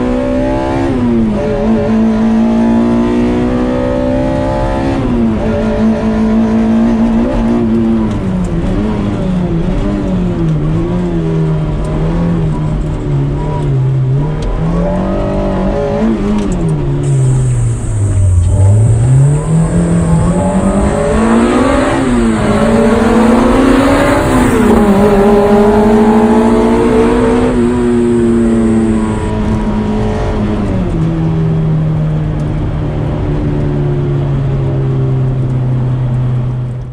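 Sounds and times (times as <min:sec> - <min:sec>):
car engine revving through gears: 0:00.0 - 0:33.7.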